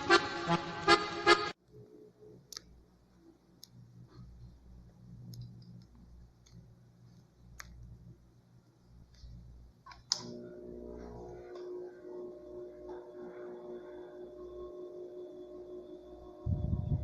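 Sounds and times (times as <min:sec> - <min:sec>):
steady pitched hum: 0:00.0 - 0:17.0
faint low hum: 0:01.6 - 0:17.0.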